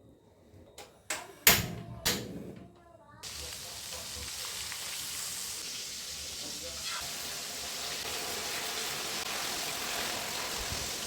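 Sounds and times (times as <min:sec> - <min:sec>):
food sizzling in hot oil: 0:03.2 - 0:11.0.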